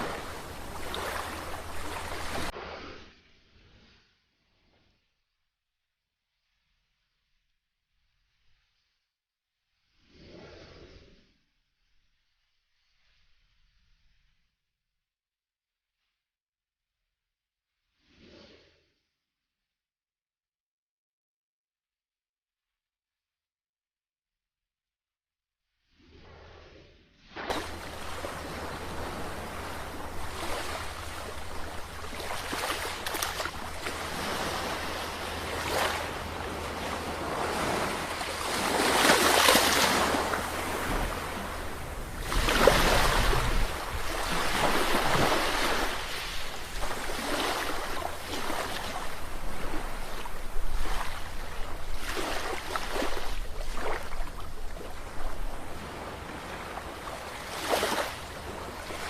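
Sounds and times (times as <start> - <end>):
sea waves breaking: 0.0 - 3.0, 27.4 - 59.0.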